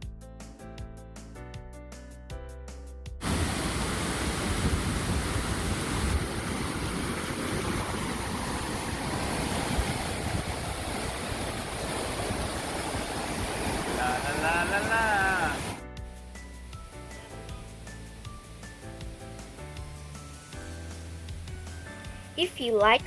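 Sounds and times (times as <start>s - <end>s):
background music: 0.0s - 3.2s, 14.0s - 23.0s
waterfall rushing: 3.2s - 15.8s.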